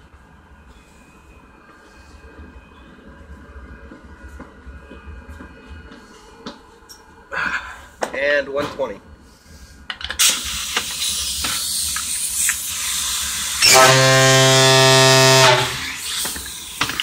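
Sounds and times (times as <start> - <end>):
compressed air hissing: 9.3 - 17.0
low fog horn blast: 13.6 - 16.0.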